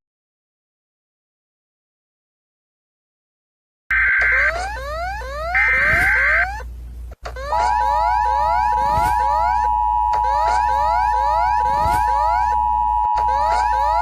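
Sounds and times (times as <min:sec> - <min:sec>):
low hum: 0:04.0 - 0:14.0
steady high electronic tone: 0:07.6 - 0:14.0.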